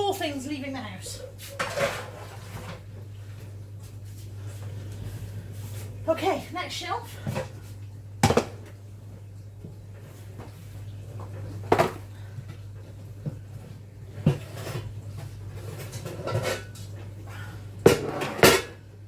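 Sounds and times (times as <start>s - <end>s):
steady low hum: 0.0s - 19.0s
metal bakeware clattering: 15.6s - 16.9s, 17.9s - 18.8s.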